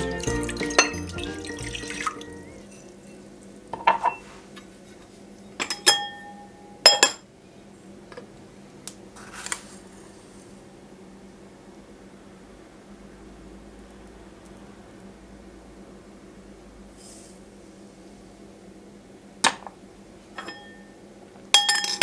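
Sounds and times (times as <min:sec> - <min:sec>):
background music: 0:00.0 - 0:02.8
water splashing: 0:00.0 - 0:03.2
dishes clinking: 0:00.0 - 0:04.4, 0:05.6 - 0:07.2, 0:20.4 - 0:20.8, 0:21.6 - 0:22.0.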